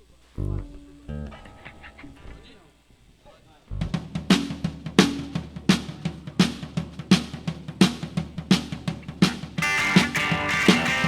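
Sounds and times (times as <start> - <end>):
guitar sustained chords: 0.4 - 2.8, 9.6 - 11.0
rock drum kit beat: 3.7 - 11.0.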